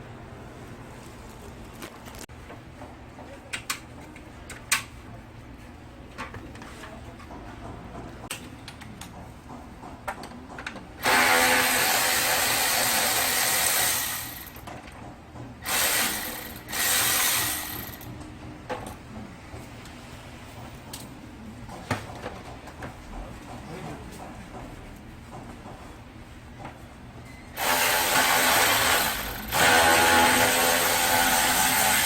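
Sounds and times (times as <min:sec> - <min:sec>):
handheld power tool running: 0:11.0 - 0:14.6, 0:15.6 - 0:18.1, 0:27.6 - 0:32.0.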